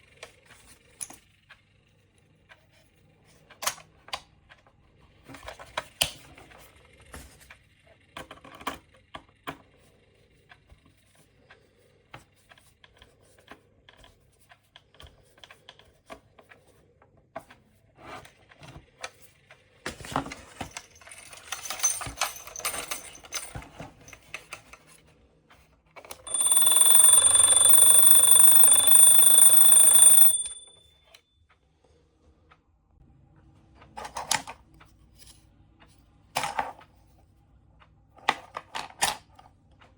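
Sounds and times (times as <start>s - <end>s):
clock mechanism clicks and rattles: 20.2s - 24.8s, 26.0s - 30.8s
alarm clock ringing: 26.2s - 30.9s.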